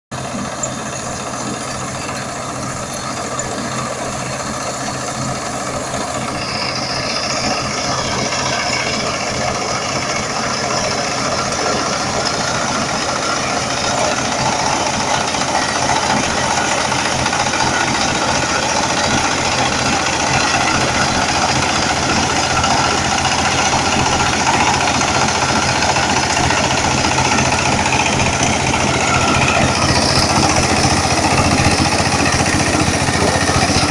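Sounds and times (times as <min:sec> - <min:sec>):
combine harvester engine running: 0:00.1 - 0:33.9.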